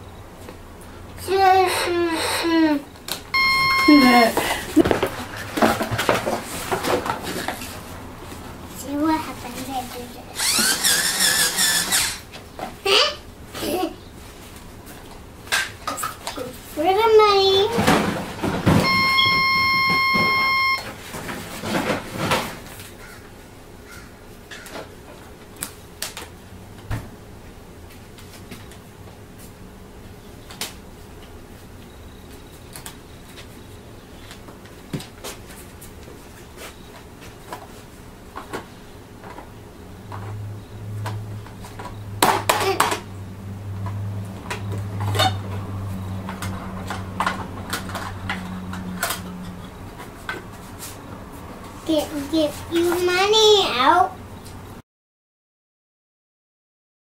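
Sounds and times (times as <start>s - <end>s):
toy cash register beep: 3.4s - 4.4s, 18.8s - 20.9s.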